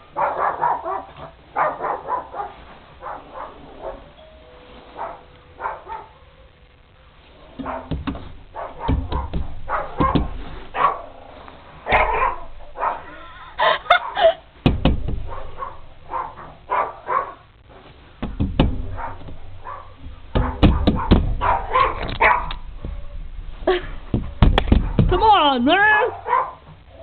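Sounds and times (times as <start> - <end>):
dog barking furiously: 0.0 - 4.1, 5.0 - 6.2, 7.4 - 14.4, 15.2 - 17.5, 18.8 - 23.1, 25.8 - 26.7.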